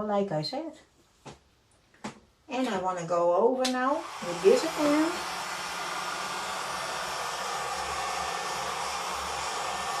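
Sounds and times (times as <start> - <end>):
heat gun blowing air: 4.0 - 10.0.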